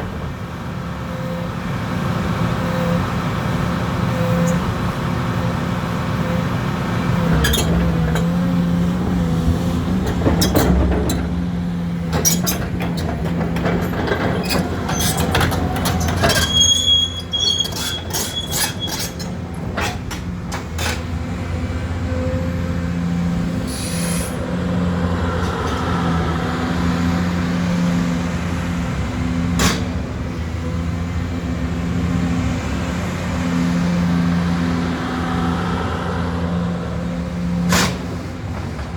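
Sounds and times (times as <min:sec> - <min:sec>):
excavator diesel engine running: 0:00.0 - 0:38.9
metallic clanks and knocks: 0:09.7 - 0:16.9
brief high squeal: 0:16.3 - 0:19.2.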